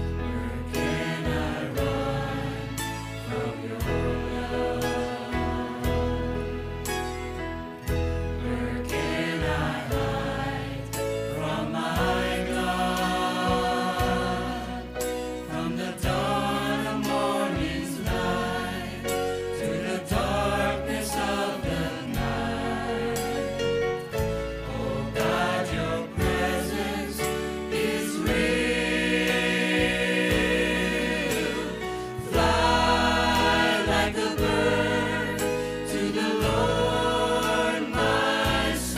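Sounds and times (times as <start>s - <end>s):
choir singing gospel song: 0.0s - 38.9s
held bass notes: 28.3s - 38.9s.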